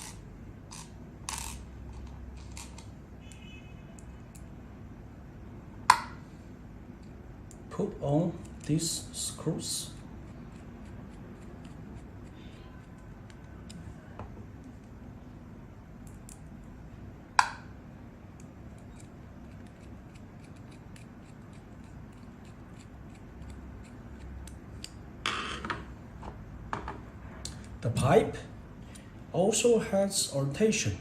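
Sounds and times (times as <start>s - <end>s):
screwdriver metal ticks and scrapes: 10.2s - 13.8s, 18.7s - 25.0s.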